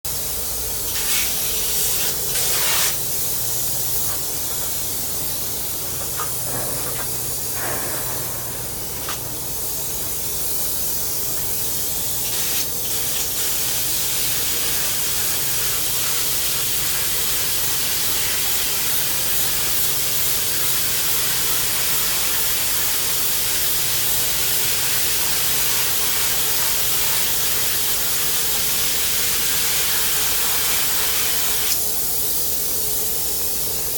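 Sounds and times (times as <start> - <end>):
spray foam gun hissing: 0.1 - 33.9.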